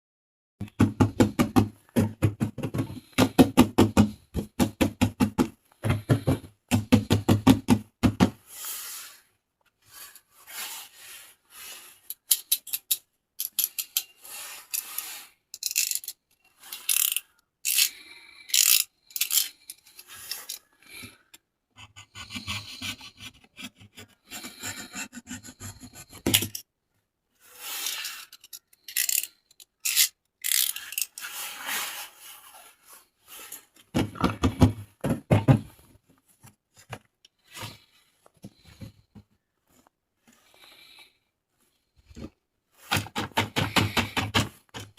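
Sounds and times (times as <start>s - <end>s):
hand scratching toy packaging: 9.9s - 12.3s, 14.2s - 20.6s, 21.8s - 26.6s, 27.4s - 33.5s.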